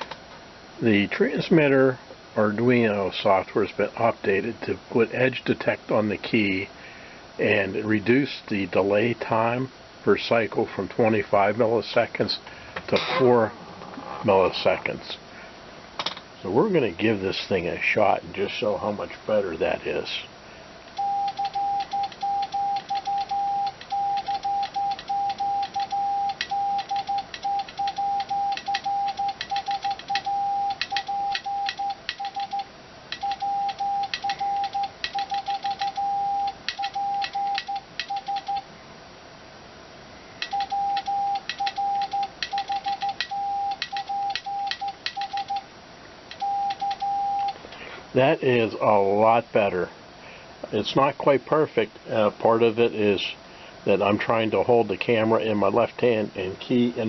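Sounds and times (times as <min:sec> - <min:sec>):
morse code tone: 0:21.0 - 0:38.7, 0:40.4 - 0:45.6, 0:46.3 - 0:47.6.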